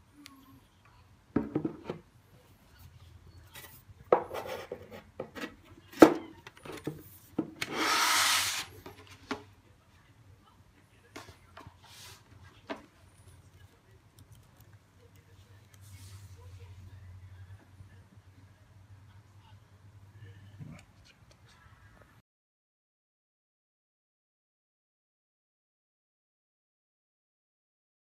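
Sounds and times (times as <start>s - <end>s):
short rubbing scrape: 7.6s - 8.8s.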